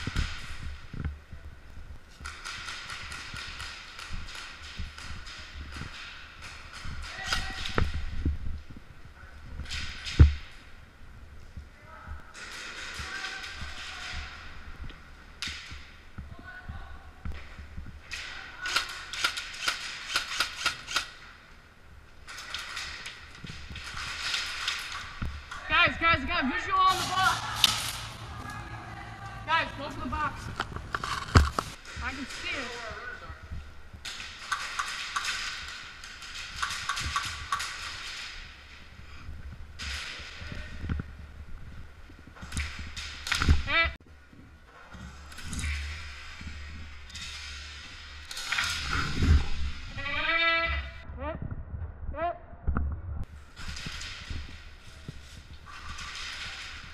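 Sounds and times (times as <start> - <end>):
airsoft rifle shots: 18.1 - 21.3, 34.0 - 38.4.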